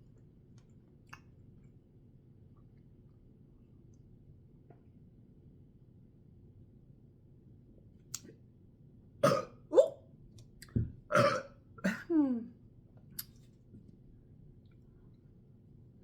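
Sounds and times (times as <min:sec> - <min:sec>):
woman burping: 0:09.2 - 0:09.9, 0:11.1 - 0:12.5.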